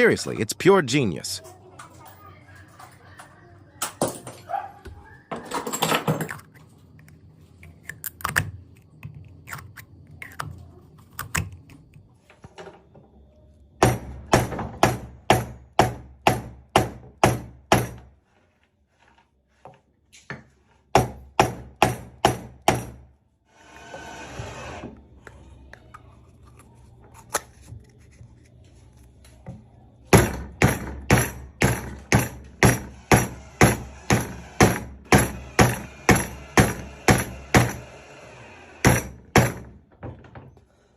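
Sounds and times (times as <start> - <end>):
hammer blows: 30.2 - 37.9.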